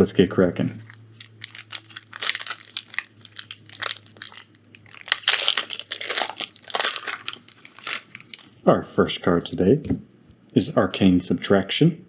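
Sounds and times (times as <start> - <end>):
foil wrapper crinkling: 0.7 - 8.6.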